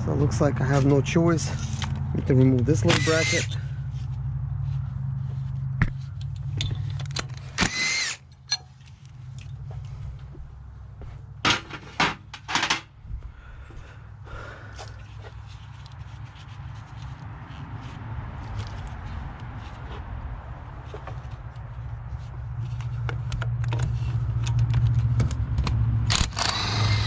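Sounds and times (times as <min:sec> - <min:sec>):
hand tools clicking and clanking: 0:06.2 - 0:09.6.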